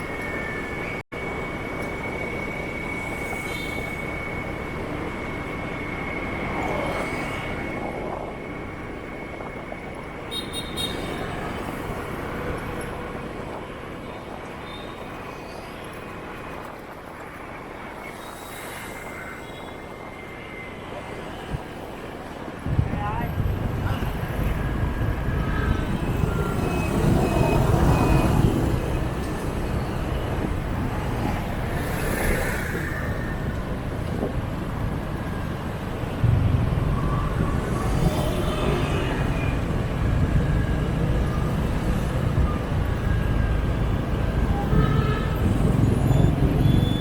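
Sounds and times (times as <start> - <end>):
road noise: 0.0 - 47.0
motorbike engines: 20.8 - 47.0.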